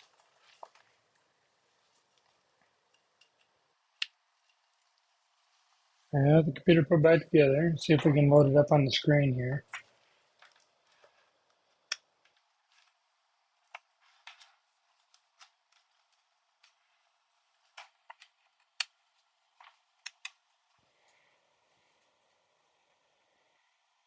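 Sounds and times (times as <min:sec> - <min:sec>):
faint clicks and taps: 0:00.0 - 0:05.9, 0:09.6 - 0:21.3.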